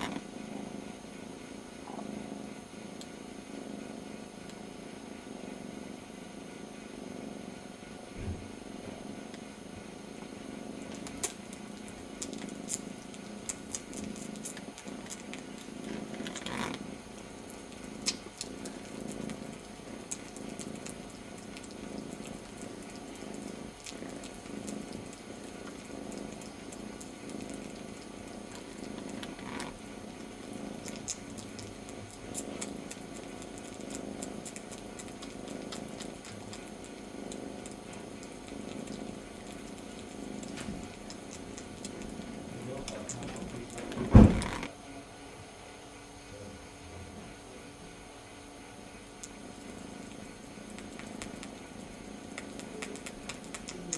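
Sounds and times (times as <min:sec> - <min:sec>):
kitten purring: 0:00.0 - 0:45.2, 0:45.8 - 0:53.9
kitten suckling clicks: 0:10.9 - 0:16.8, 0:17.5 - 0:29.7, 0:30.4 - 0:43.8, 0:49.2 - 0:53.9.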